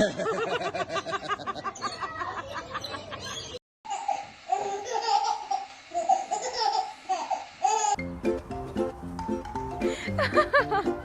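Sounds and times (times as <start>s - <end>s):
high-pitched laughter: 0.0s - 7.0s.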